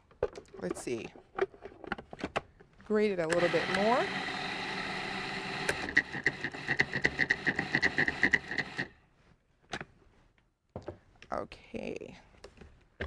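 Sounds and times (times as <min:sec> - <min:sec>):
food processor grating carrots: 0:03.3 - 0:08.9.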